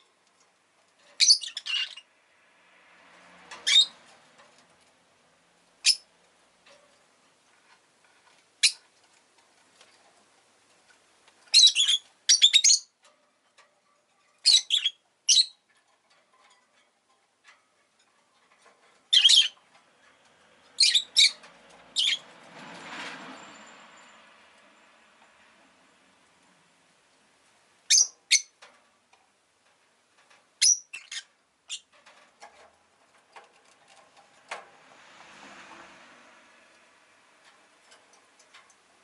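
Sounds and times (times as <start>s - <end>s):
passing street traffic: 2.0s - 9.0s, 18.4s - 27.8s, 32.2s - 39.0s
bird shrill chirps: 20.8s - 21.4s.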